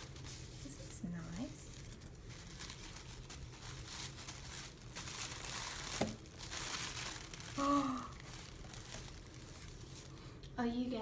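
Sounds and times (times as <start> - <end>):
packaging crinkling and tearing: 0.0 - 10.3
person humming: 7.6 - 8.2.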